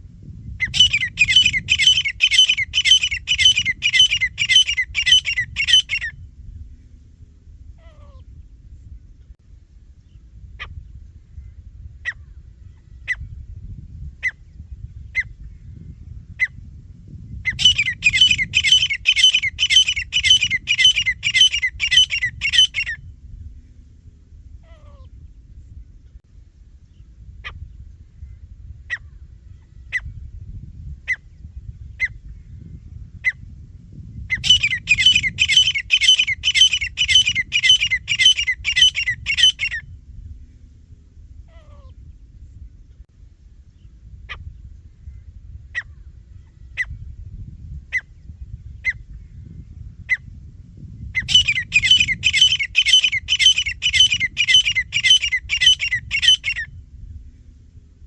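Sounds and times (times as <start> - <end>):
low background rumble: 0.0 - 58.0
francolin calling: 0.6 - 6.1, 17.5 - 23.0, 34.3 - 39.8, 51.2 - 56.7.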